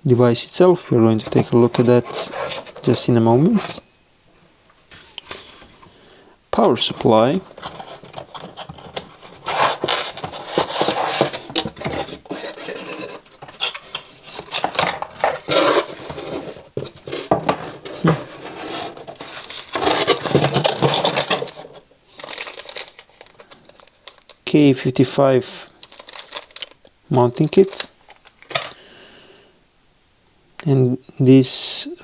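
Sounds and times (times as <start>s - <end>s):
packaging rustling: 0.7s - 3.9s, 4.9s - 6.0s, 6.6s - 24.4s, 25.7s - 28.8s
small hard parts clattering: 7.1s - 24.4s.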